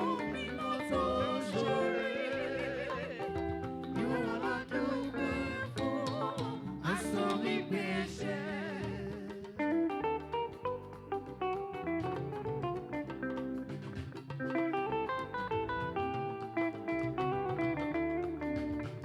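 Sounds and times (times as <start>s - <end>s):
person singing with vibrato: 0.0s - 9.5s
band music: 0.0s - 19.0s.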